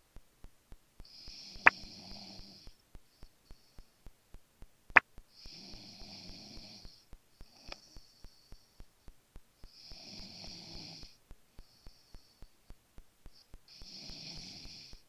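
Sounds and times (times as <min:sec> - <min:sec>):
sharp clicks: 0:00.0 - 0:10.6
faint even ticking: 0:00.0 - 0:15.0
person snoring: 0:01.0 - 0:02.8, 0:05.4 - 0:08.5, 0:09.7 - 0:12.4, 0:13.7 - 0:15.0.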